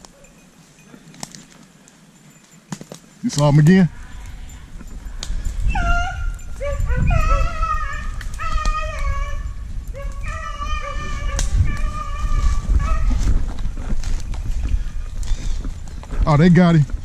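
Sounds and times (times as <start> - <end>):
dogs baying: 4.1 - 14.0.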